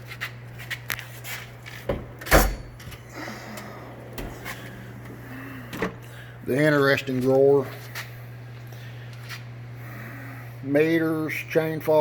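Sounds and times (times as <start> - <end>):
loud drawer clunk: 1.9 - 2.9, 4.0 - 6.0.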